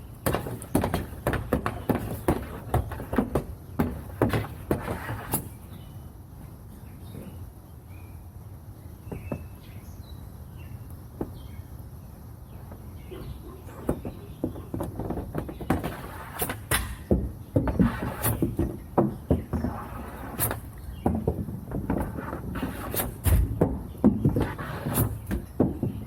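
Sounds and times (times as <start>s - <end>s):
hockey pucks clacking on tiles: 0.2s - 5.4s
small birds chirping: 5.5s - 16.4s, 17.0s - 22.2s.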